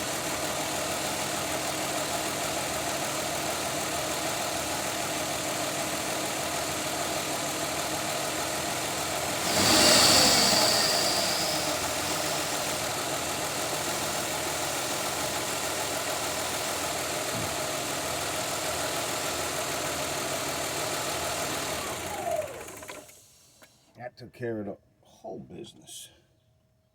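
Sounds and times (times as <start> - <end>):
car engine idling and revving: 0.0 - 22.7
high whine: 9.3 - 14.3.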